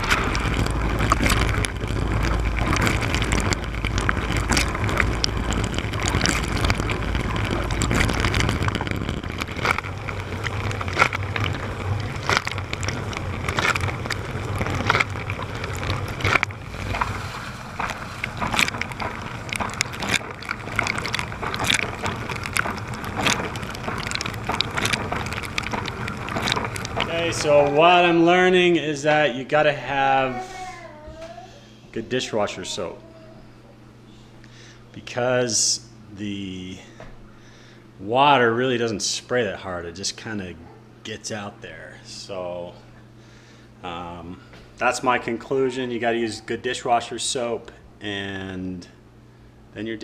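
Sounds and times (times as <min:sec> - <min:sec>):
dishwasher water spraying: 0:00.0 - 0:28.4
low hum: 0:00.0 - 0:35.0.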